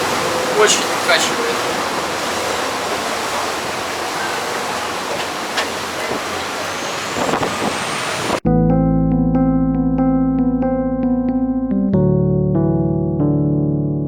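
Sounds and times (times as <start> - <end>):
boat rushing through water: 0.0 - 8.4.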